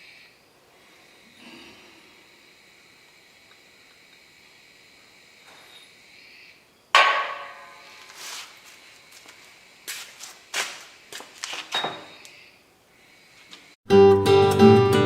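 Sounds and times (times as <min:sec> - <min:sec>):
sharp metal knocks: 0:06.9 - 0:08.0
loud ringing clang of steel: 0:07.0 - 0:08.0.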